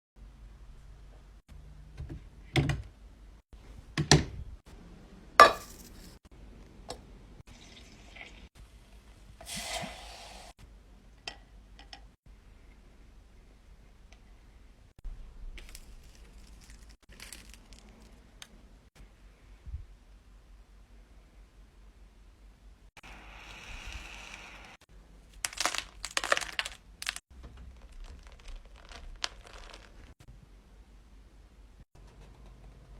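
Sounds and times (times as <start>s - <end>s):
kitchen knocks and clatters: 5.4s - 6.2s
crinkling and rustling: 15.6s - 18.6s, 25.3s - 30.2s
water pouring: 27.8s - 30.2s.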